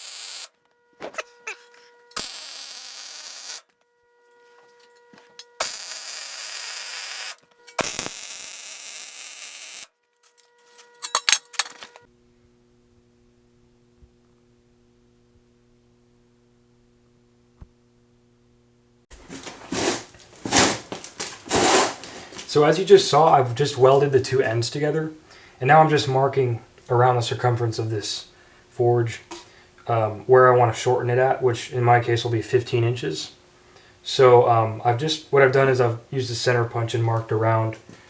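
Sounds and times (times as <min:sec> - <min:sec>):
welding arc crackling and hissing: 0:00.0 - 0:03.7, 0:04.7 - 0:09.9, 0:19.2 - 0:23.2
electrical hum: 0:00.0 - 0:38.0.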